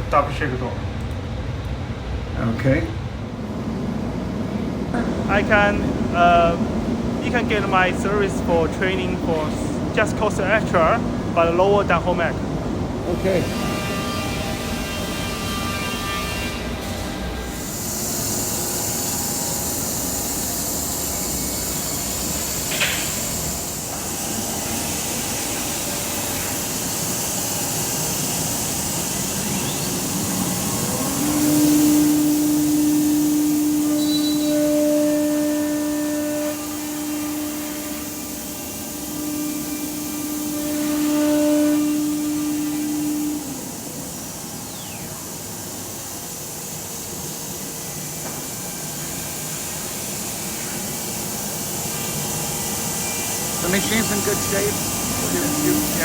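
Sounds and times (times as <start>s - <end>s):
vacuum pump hiss: 2.4s - 56.0s
router spindle whine: 13.1s - 56.0s.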